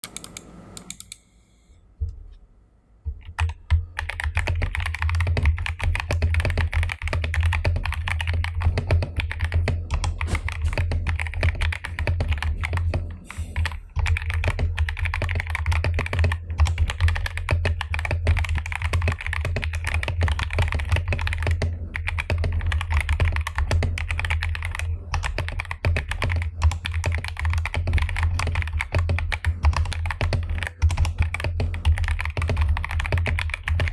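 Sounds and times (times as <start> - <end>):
mechanical keyboard typing: 3.2 - 33.9.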